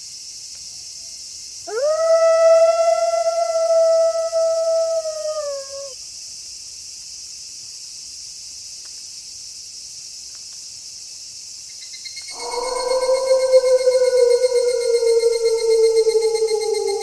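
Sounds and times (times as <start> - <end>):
crickets chirping: 0.0 - 17.0
wolf howling: 1.7 - 6.0, 12.3 - 17.0.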